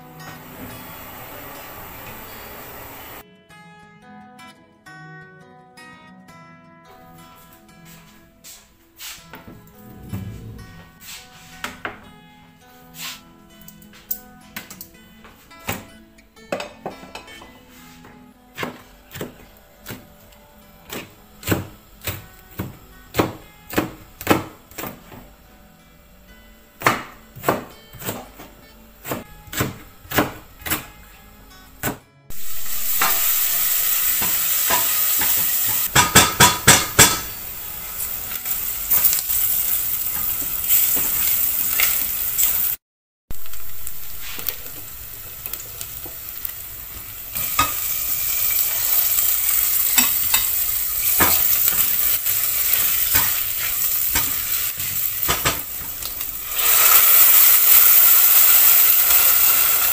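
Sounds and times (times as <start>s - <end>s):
food sizzling in a pan: 0.0s - 3.2s, 17.2s - 25.6s, 29.1s - 59.9s.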